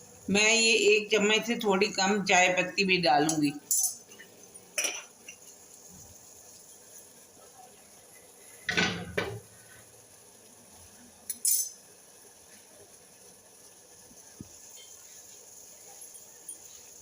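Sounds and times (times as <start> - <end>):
faint steady hiss: 0.0 - 17.0
metal spoon clinking against pan: 3.3 - 4.2, 4.8 - 5.5, 11.3 - 11.8.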